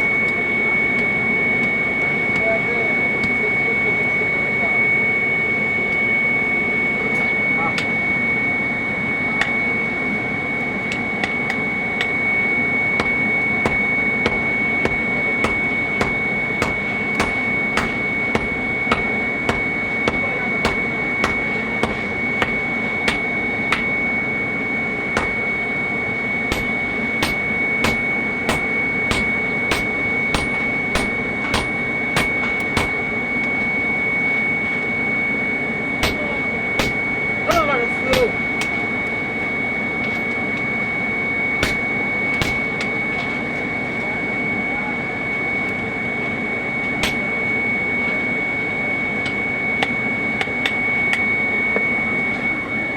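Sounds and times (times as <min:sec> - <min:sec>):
whirring with high whine: 0:00.0 - 0:52.9
hammer striking metal on anvil: 0:13.0 - 0:24.1, 0:25.1 - 0:25.8, 0:26.5 - 0:33.1, 0:36.0 - 0:38.8, 0:41.6 - 0:42.9, 0:47.0 - 0:47.3.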